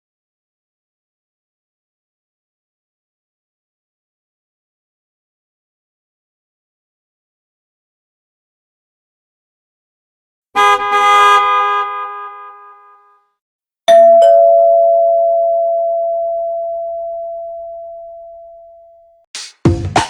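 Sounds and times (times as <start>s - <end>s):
bell-like phone chime: 13.9s - 19.0s
two-note ding-dong chime: 13.9s - 19.0s
music: 19.4s - 20.0s.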